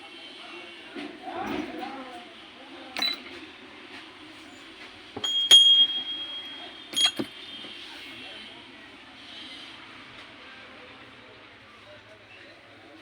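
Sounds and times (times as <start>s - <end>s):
hand bell ringing: 3.0s - 3.2s, 5.2s - 7.4s.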